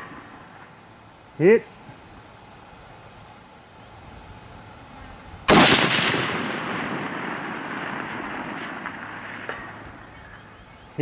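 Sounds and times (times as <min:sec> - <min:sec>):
rifle shot echoing: 0:05.5 - 0:10.8.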